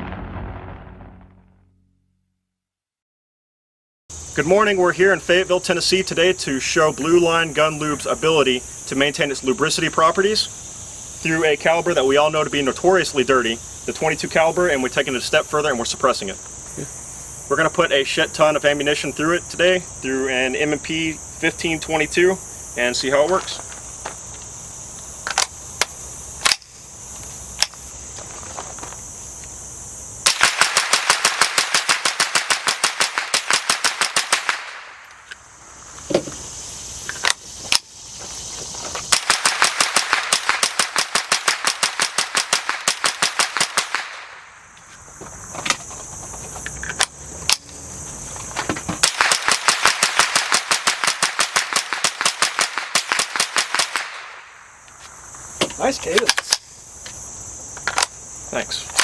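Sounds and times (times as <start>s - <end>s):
sharp clicks: 25.2s - 26.7s, 49.0s - 55.0s, 56.1s - 56.7s
suppressed rifle rapid fire: 30.2s - 35.0s, 39.1s - 44.4s, 49.0s - 54.5s.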